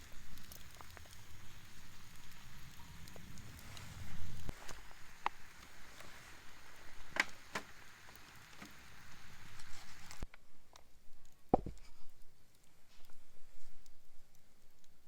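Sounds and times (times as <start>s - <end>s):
campfire pops and snaps: 0.0s - 13.2s.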